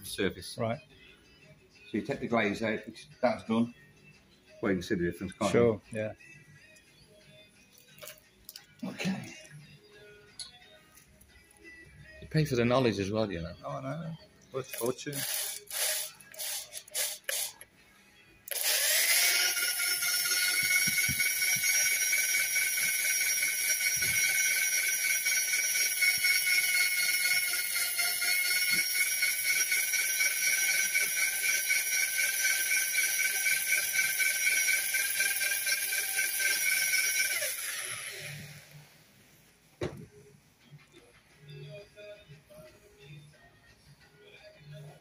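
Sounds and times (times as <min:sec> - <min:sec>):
power tool high-pitched whine: 0:15.2 - 0:17.5, 0:18.5 - 0:38.9.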